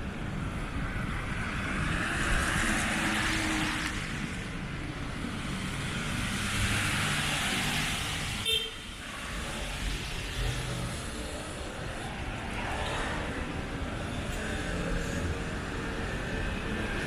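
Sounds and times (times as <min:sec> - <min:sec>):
cars passing on wet road: 0:00.0 - 0:17.0.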